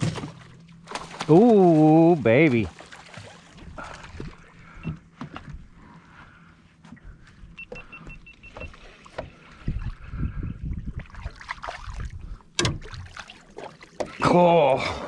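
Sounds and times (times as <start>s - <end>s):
knocks and bumps on boat: 0.0s - 1.4s, 12.6s - 13.2s
water movement around boat: 0.0s - 15.0s.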